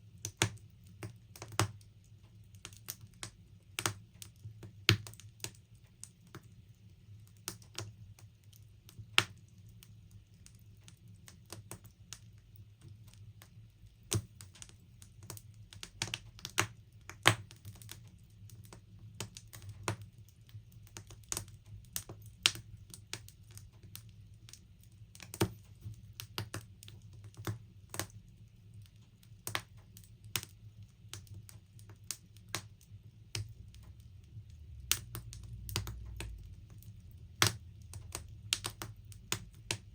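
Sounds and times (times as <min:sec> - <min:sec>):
logs crackling and popping: 0:00.2 - 0:39.9
low steady rumble: 0:32.4 - 0:39.9.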